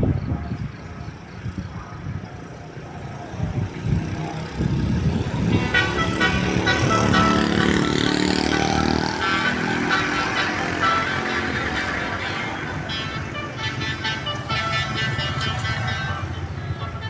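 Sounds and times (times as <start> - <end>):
bus engine: 0.0 - 17.0
bus horn playing melody: 5.3 - 17.0.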